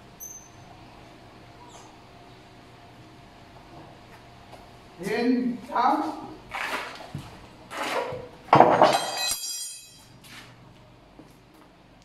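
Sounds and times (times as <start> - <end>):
ringing metal: 8.8 - 10.1.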